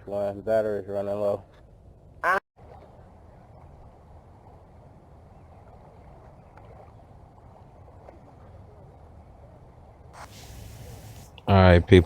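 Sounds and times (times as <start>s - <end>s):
river water wash: 2.6s - 11.4s.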